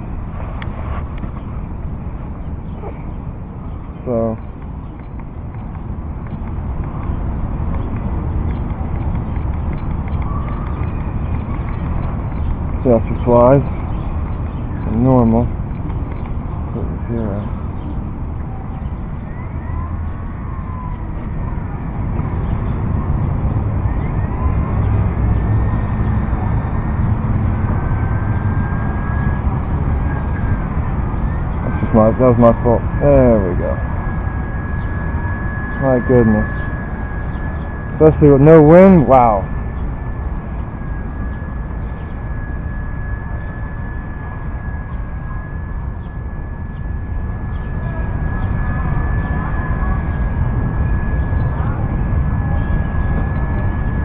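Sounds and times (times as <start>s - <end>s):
heavy low rumble: 0.0s - 54.0s
electric motor whine: 19.9s - 54.0s.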